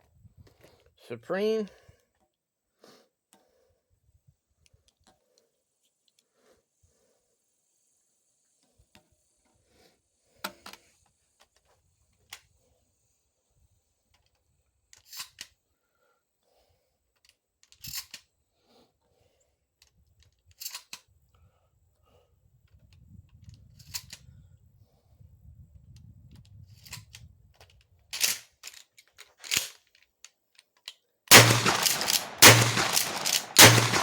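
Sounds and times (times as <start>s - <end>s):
shotgun mechanical clicks: 31.3s - 34.0s.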